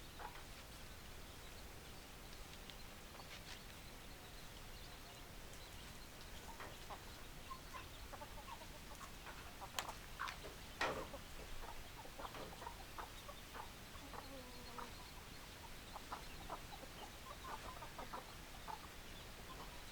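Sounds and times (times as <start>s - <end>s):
chickens clucking: 0.0s - 0.8s, 5.2s - 19.9s.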